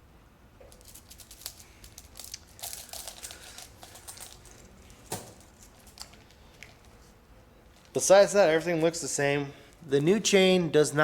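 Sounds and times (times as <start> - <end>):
metal chain links clicking and rattling: 0.7 - 6.4.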